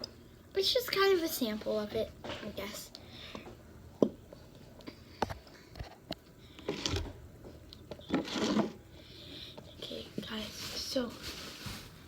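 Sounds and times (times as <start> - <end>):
rustling scraping noises: 8.1 - 8.8, 9.9 - 12.0.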